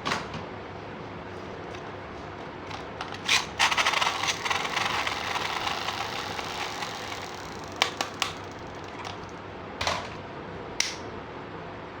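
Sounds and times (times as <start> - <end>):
plastic toy parts clicking and rattling: 2.7 - 9.4
sharp plastic clicks: 2.7 - 9.4.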